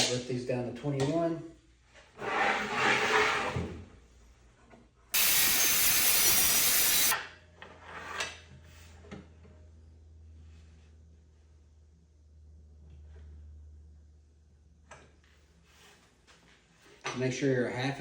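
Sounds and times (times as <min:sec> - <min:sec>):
power saw cutting wood: 0:05.2 - 0:07.2.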